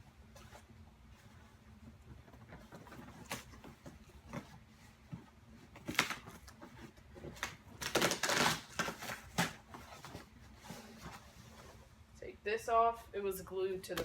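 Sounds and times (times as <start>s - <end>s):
cardboard rustling scrape: 0.3s - 12.0s.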